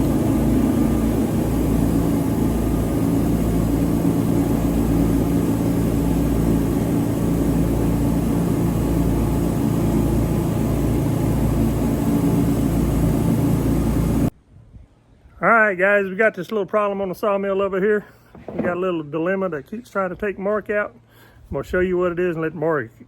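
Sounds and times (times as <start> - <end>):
sawmill engine running: 0.0 - 14.3.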